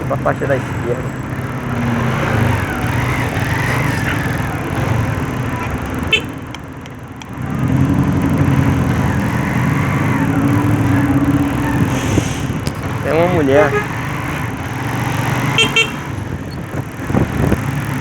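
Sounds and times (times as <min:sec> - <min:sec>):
motorcycle engine running: 0:00.0 - 0:18.0
click: 0:06.2 - 0:07.4.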